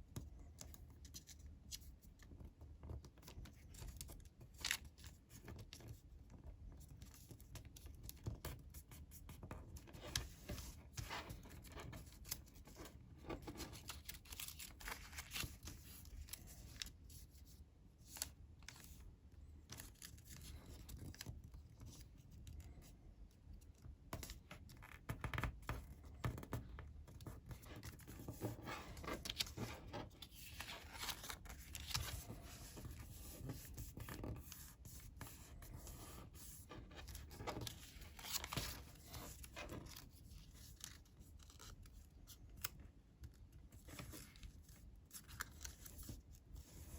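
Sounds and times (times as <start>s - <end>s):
paper being folded and creased: 0.6s - 19.0s, 19.6s - 22.6s, 24.2s - 46.9s.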